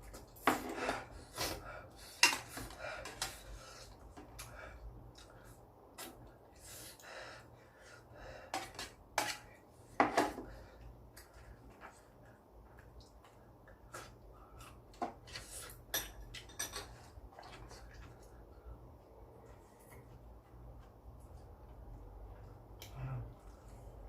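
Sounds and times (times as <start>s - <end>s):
utensils clinking against a dish: 15.4s - 17.1s.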